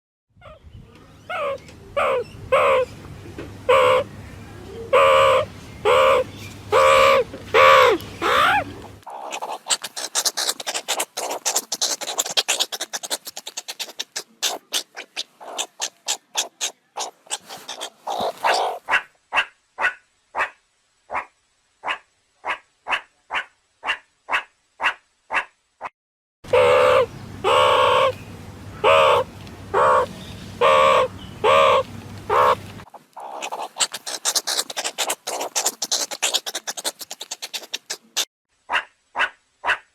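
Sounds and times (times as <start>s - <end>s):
meerkat calls: 1.3s - 2.9s, 3.7s - 4.1s, 4.9s - 25.5s, 26.5s - 28.2s, 28.8s - 39.8s
meerkat chattering clicks and chirps: 1.3s - 2.9s, 3.7s - 4.1s, 4.9s - 19.0s, 28.8s - 38.3s.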